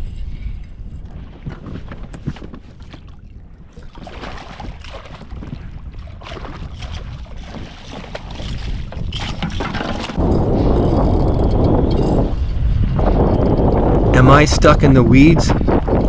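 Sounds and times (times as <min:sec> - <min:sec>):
wind buffeting microphone: 0:00.0 - 0:16.0
water splashing against boat: 0:01.1 - 0:10.2, 0:13.7 - 0:16.0.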